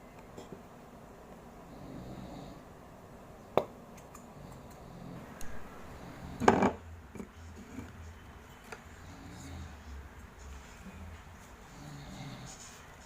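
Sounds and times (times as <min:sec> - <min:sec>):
objects clattering: 0:06.4 - 0:06.8.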